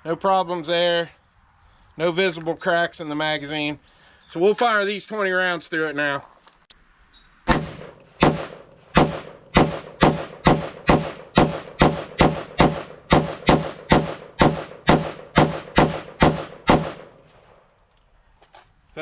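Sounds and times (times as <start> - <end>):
rifle shots: 7.5 - 17.6.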